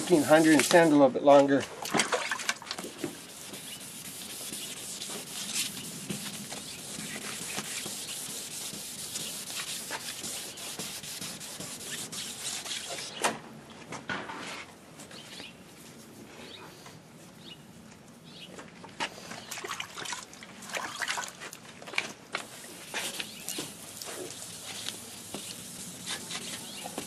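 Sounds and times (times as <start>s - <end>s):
sandpaper scrubbing plastic: 0.0s - 1.0s, 2.9s - 13.1s, 22.4s - 27.0s.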